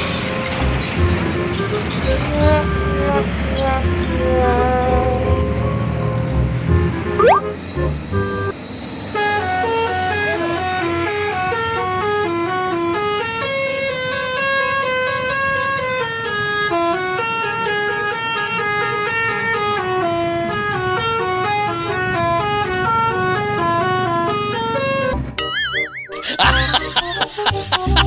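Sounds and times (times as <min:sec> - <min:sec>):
multi-note bus horn tune: 0:01.2 - 0:05.6, 0:09.1 - 0:25.4.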